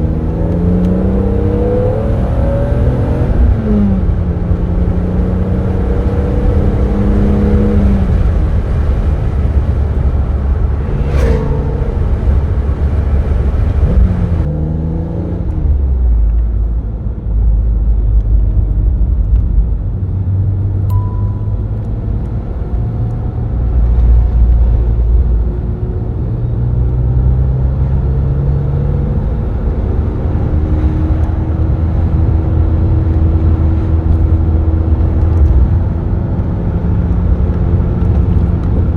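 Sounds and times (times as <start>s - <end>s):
car engine revving: 0.0s - 15.9s
road and tyre rumble: 0.0s - 38.9s.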